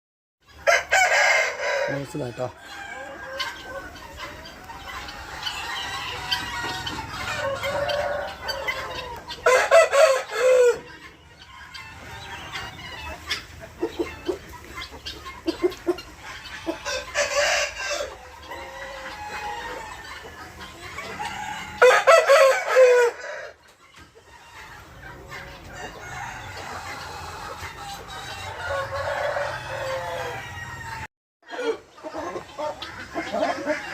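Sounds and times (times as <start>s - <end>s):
chicken clucking: 0.4s - 33.9s
rooster crowing: 0.6s - 3.4s, 7.2s - 10.9s, 21.2s - 23.6s, 28.6s - 31.8s.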